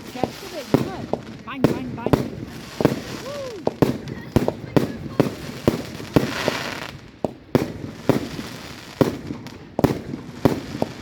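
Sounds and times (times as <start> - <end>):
firework hiss: 0.0 - 11.0
fireworks bangs: 0.0 - 11.0.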